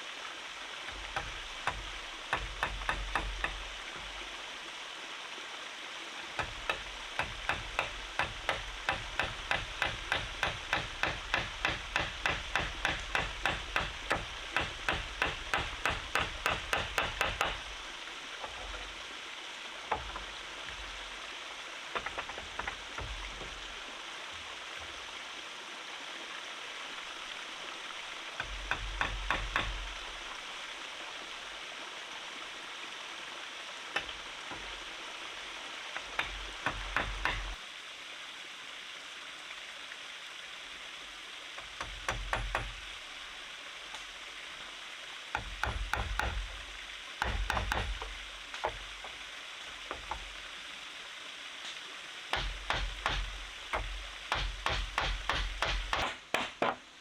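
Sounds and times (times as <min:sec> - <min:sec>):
stream rushing: 0:00.0 - 0:57.0
hand tools knocking on wood: 0:00.9 - 0:04.1, 0:06.4 - 0:17.7, 0:19.9 - 0:20.3, 0:22.0 - 0:23.6, 0:28.4 - 0:30.0, 0:36.0 - 0:37.6, 0:41.7 - 0:42.8, 0:45.4 - 0:46.6, 0:47.2 - 0:49.2, 0:49.8 - 0:50.3, 0:52.3 - 0:56.8.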